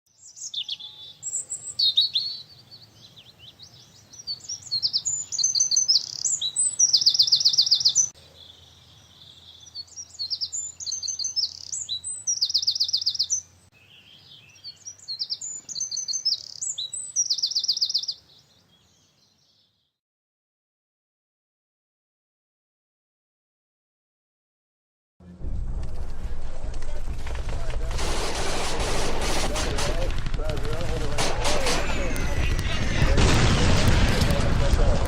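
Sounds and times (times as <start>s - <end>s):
songbird singing: 0.1s - 20.0s.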